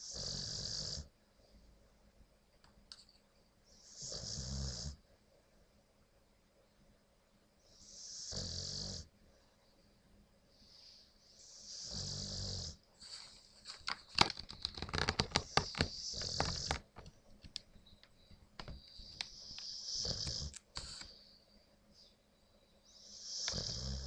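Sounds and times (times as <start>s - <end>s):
dog snoring: 0.0s - 1.1s, 3.8s - 5.0s, 7.7s - 9.1s, 10.8s - 12.8s, 15.3s - 16.8s, 19.4s - 20.6s, 23.0s - 24.0s.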